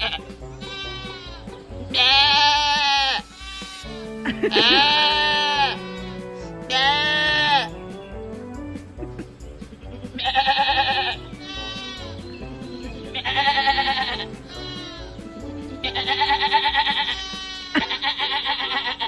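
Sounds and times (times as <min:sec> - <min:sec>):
man imitating sheep bleat: 0:00.0 - 0:07.7, 0:10.2 - 0:12.2, 0:13.1 - 0:15.2, 0:15.8 - 0:19.0
sheep bleating: 0:00.0 - 0:07.8, 0:10.1 - 0:19.0
background music: 0:00.0 - 0:19.0.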